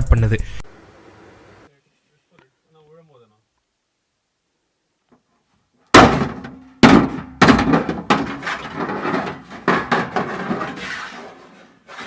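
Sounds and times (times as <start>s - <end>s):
heavy metal crashes: 5.9s - 10.9s.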